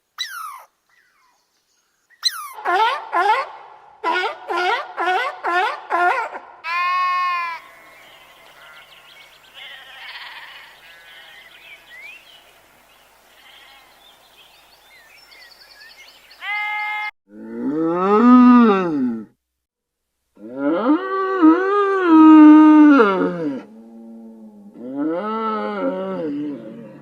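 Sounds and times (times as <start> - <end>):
faint chirping: 7.6 - 16.5
long animal call rising and falling: 20.4 - 27.0.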